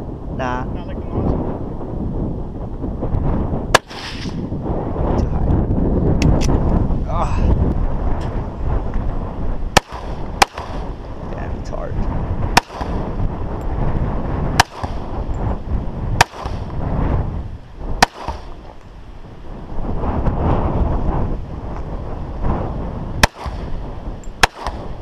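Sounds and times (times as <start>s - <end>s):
gunshots: 3.7s - 4.4s, 9.7s - 11.0s, 12.4s - 13.2s, 14.5s - 15.3s, 16.1s - 16.8s, 18.0s - 18.7s, 23.2s - 25.0s.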